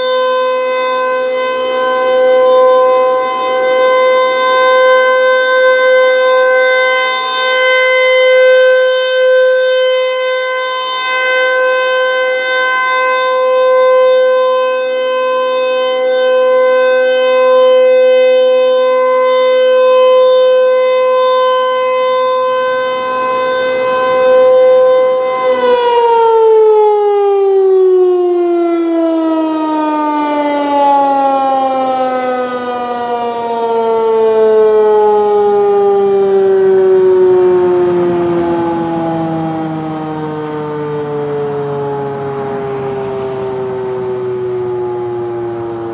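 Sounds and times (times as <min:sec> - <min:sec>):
warning siren alert tone: 0:00.0 - 0:45.9.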